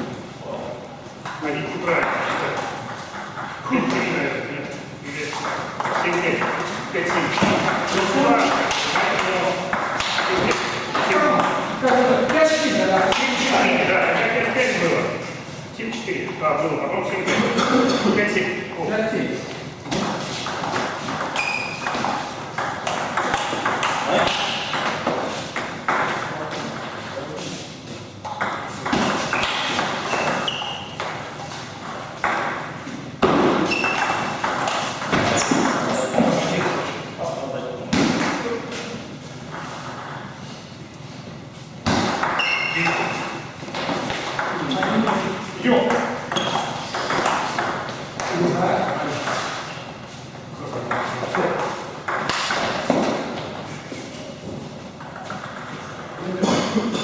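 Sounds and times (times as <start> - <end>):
table tennis ball knocking: 5.4 - 12.0, 19.8 - 27.2, 28.2 - 36.8, 41.8 - 49.5, 50.8 - 53.4, 55.0 - 56.3
short high squeaks: 21.3 - 21.9, 29.3 - 31.0, 33.7 - 34.4, 42.4 - 43.4.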